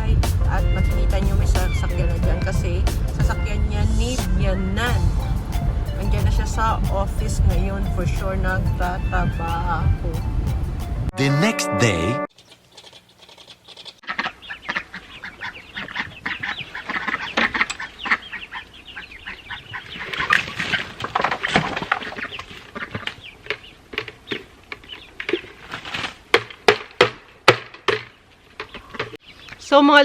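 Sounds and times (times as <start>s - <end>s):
poultry squawking and clucking: 1.3s - 3.6s, 12.4s - 21.3s.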